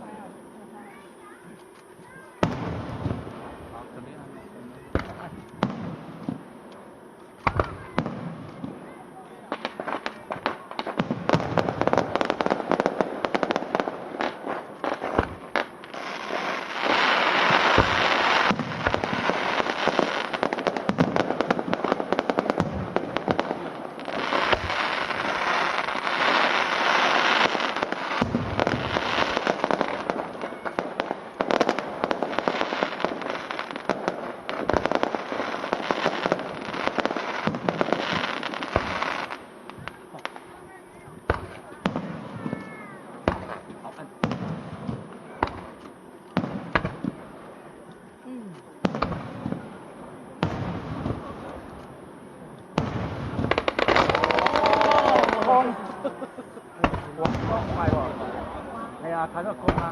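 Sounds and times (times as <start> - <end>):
fireworks crackling and popping: 0.0 - 59.9
deep firework boom: 56.8 - 58.7.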